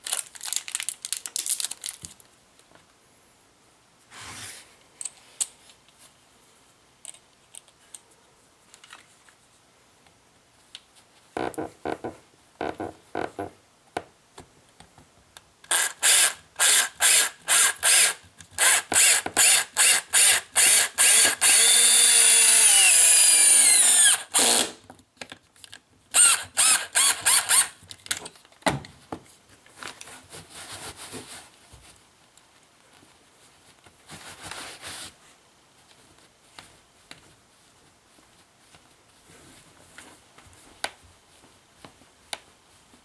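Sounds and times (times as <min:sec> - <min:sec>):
power drill driving a screw: 0:15.7 - 0:24.8, 0:26.2 - 0:27.7.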